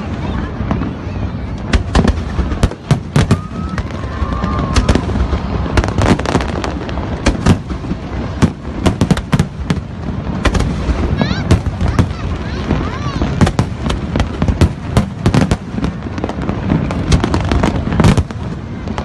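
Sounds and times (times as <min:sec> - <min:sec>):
fireworks bangs: 0:00.0 - 0:19.0
firework whistle: 0:03.0 - 0:06.7.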